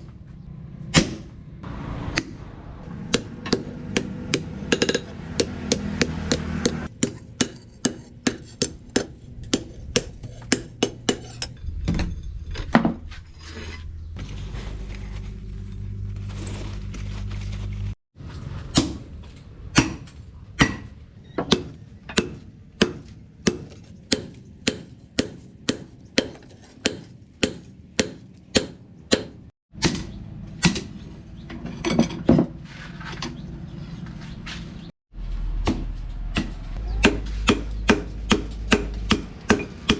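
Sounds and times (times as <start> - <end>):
hammer striking steel on anvil: 3.0 - 11.5, 21.5 - 29.5, 36.4 - 39.9.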